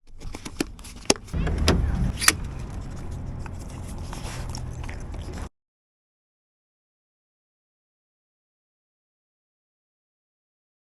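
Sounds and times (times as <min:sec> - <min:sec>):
engine rumbling: 0:00.7 - 0:05.5
sharp clicks and knocks: 0:01.1 - 0:03.8.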